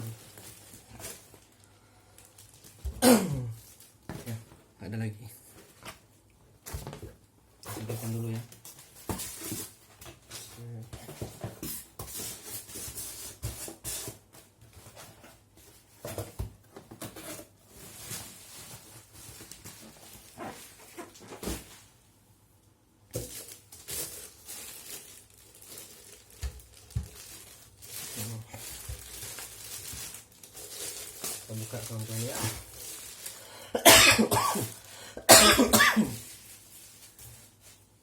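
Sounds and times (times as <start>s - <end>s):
taps scrapes and rustles of packaging: 6.6s - 21.8s, 23.1s - 33.4s.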